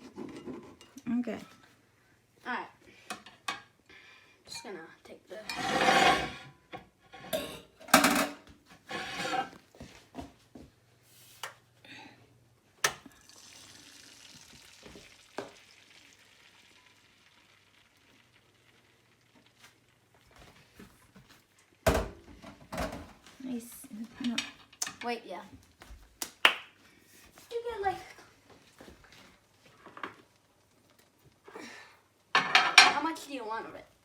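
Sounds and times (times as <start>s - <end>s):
utensil scraping a pan: 0.0s - 1.0s, 5.4s - 9.6s
eggs sizzling in a pan: 0.1s - 7.8s, 11.1s - 25.8s, 26.7s - 34.0s.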